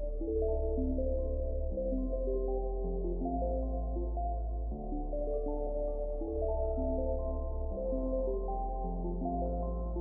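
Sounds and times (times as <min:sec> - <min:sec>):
ambient electronic music: 0:00.0 - 0:10.0.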